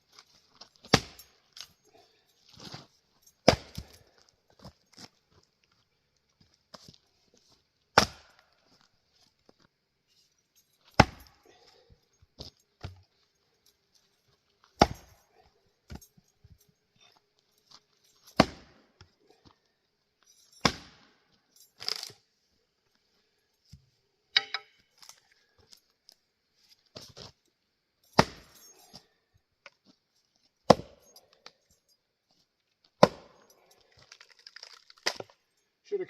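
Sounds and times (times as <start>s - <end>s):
axe splitting wood: 0.9s - 1.2s, 3.4s - 3.9s, 8.0s - 8.4s, 11.0s - 11.3s, 14.8s - 15.1s, 18.4s - 18.8s, 20.6s - 21.0s, 28.2s - 28.6s, 30.7s - 31.0s, 33.0s - 33.4s.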